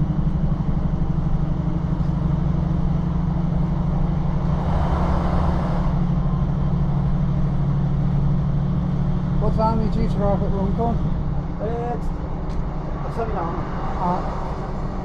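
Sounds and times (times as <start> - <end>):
train running hum: 0.0 - 15.0.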